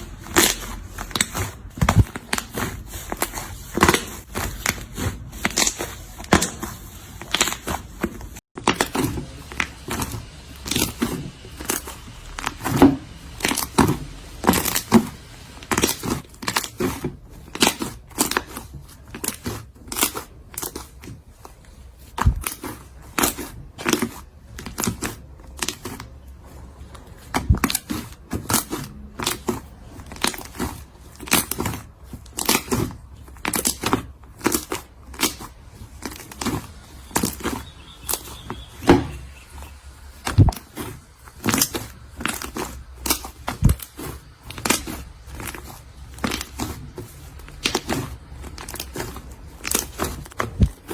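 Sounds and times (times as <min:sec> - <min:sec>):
slime squished with sticky pops: 0:27.2 - 0:50.9.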